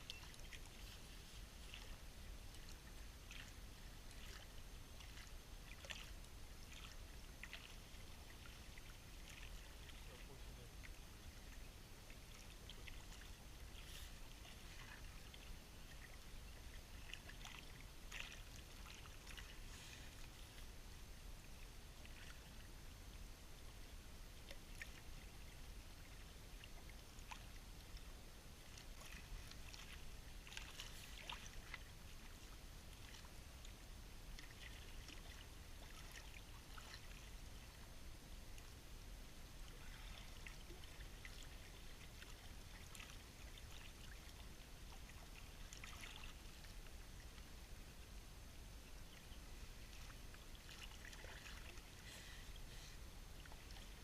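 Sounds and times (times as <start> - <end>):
low steady rumble: 0.0 - 54.0
small water splashes and trickling: 0.0 - 54.0.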